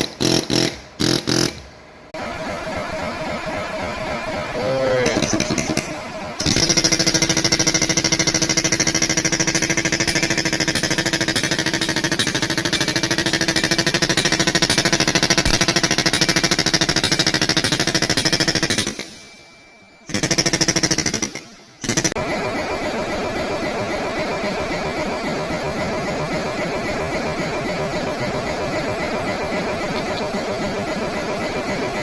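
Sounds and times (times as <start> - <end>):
pneumatic air hammer hammering: 0.0 - 1.8, 5.1 - 22.2.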